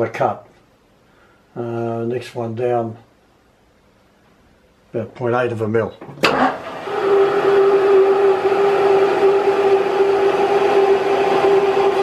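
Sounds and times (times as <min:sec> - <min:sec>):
lathe threading tool humming: 0:06.6 - 0:12.0.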